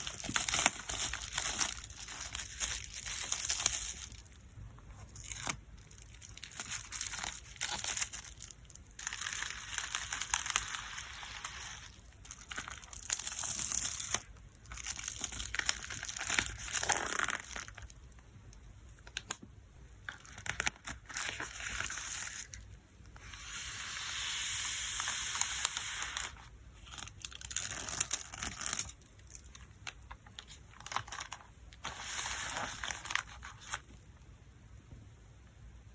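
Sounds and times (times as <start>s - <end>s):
packing materials crinkling: 0.0s - 4.4s, 5.1s - 18.0s, 24.9s - 33.9s.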